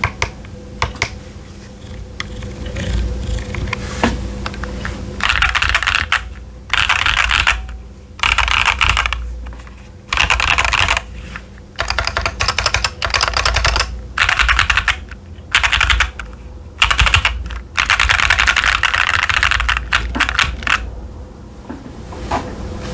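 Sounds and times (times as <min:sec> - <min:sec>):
mechanical keyboard typing: 0:04.5 - 0:09.3, 0:10.1 - 0:11.1, 0:11.8 - 0:20.9.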